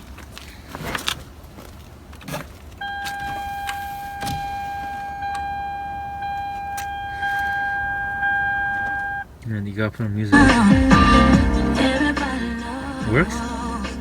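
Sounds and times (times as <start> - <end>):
handling clicks and clunks: 0.0 - 9.6
high electronic warning tone: 2.8 - 9.3.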